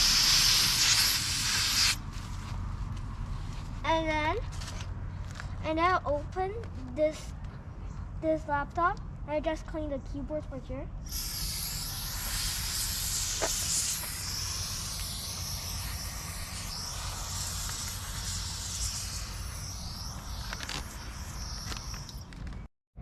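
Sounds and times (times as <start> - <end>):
air blowing hiss: 0.0 - 2.0, 11.1 - 22.3.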